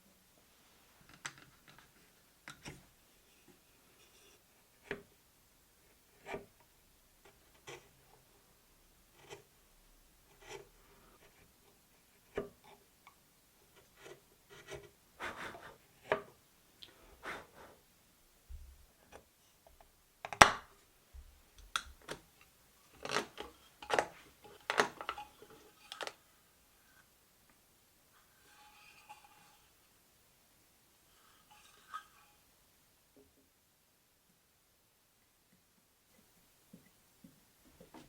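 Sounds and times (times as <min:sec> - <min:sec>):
hand tools scraping wood: 0:22.9 - 0:27.1, 0:28.2 - 0:29.8, 0:31.1 - 0:32.5.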